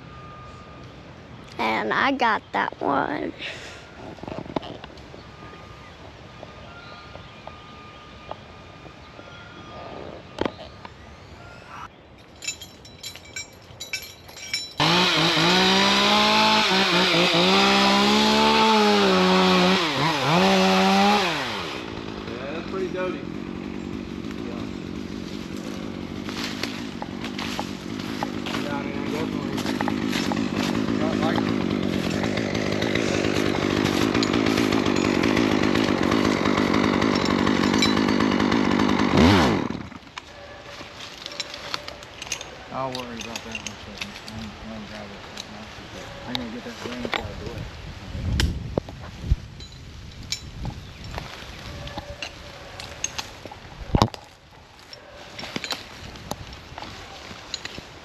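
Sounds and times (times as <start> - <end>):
chainsaw cutting at high revs: 14.8 - 40.2.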